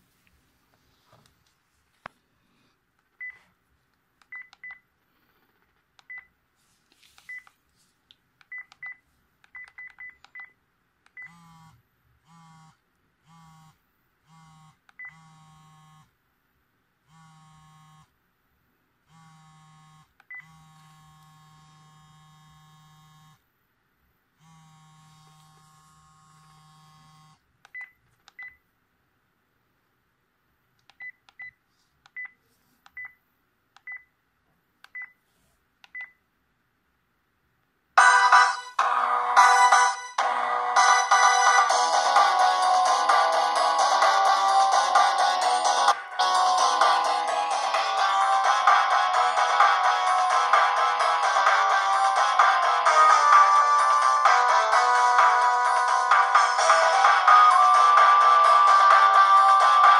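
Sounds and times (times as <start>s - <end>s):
phone keypad beeps: 35.9s - 36.2s.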